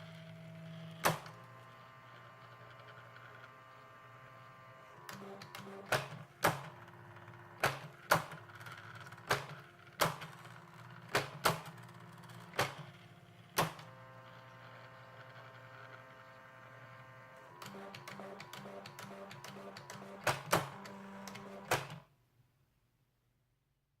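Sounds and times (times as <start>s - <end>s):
motor hum: 0.0s - 22.0s
typewriter print mechanism clacks: 5.1s - 14.0s, 17.6s - 22.0s.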